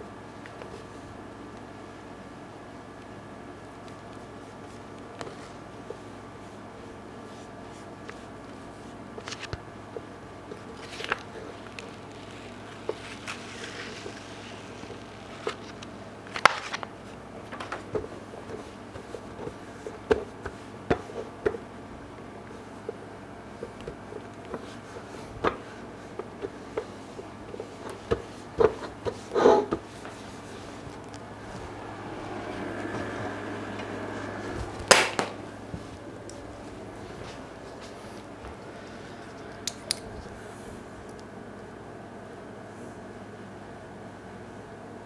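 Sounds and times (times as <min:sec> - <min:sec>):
steady low hum: 0:00.0 - 0:45.0
crinkling rustle: 0:10.5 - 0:21.3
hands tapping and knocking objects: 0:17.6 - 0:21.6.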